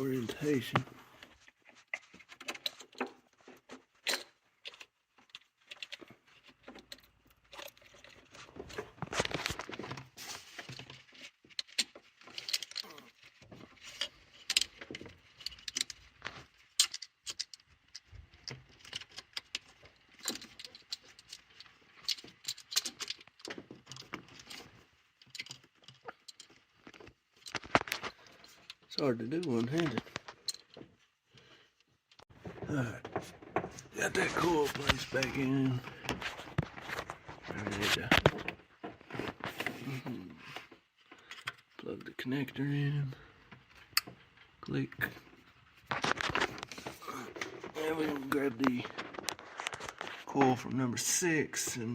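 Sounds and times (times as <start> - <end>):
plastic and metal clicks and rattles: 0.3 - 42.1, 42.8 - 51.1.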